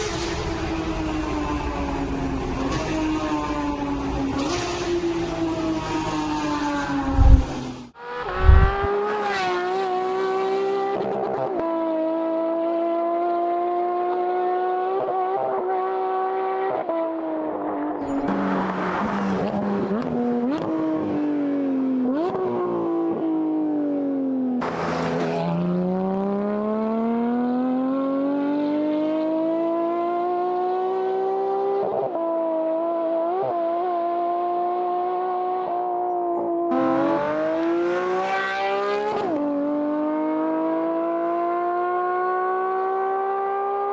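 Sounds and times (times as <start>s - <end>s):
car engine at high revs: 0.0s - 43.9s
loud low thuds: 7.1s - 7.6s, 8.3s - 8.9s.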